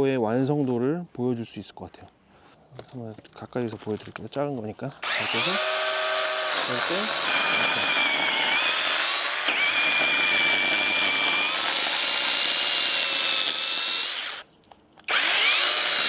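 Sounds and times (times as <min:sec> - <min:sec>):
electric chainsaw whining: 0:05.0 - 0:14.4, 0:15.1 - 0:16.0.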